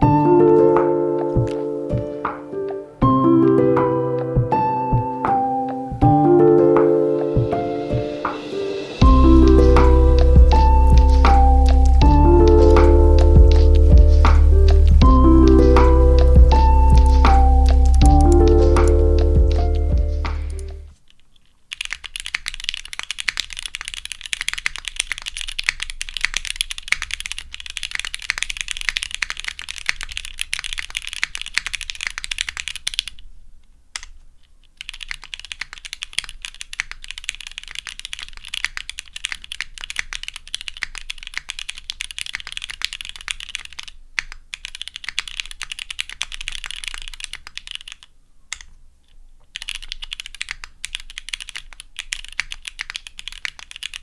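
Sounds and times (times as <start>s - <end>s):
typing on mechanical keyboard: 15.5s - 33.3s, 34.0s - 48.8s, 49.4s - 54.0s.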